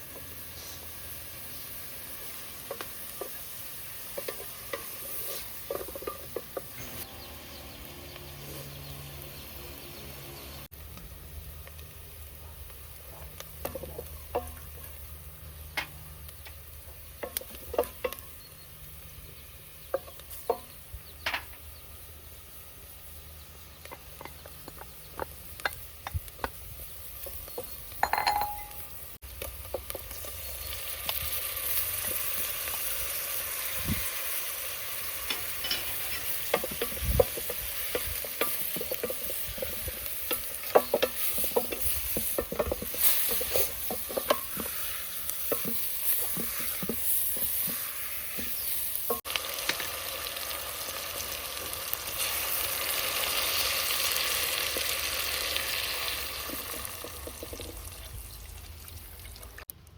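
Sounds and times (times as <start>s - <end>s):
food sizzling in a pan: 0.0s - 10.7s, 11.5s - 59.7s
utensil stirring and clicking: 35.6s - 49.3s.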